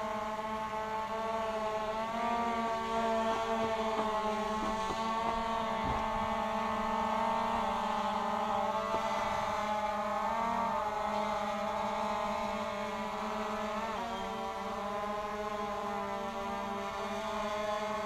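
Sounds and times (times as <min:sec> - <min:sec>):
quadcopter motors whining: 0:00.0 - 0:18.0.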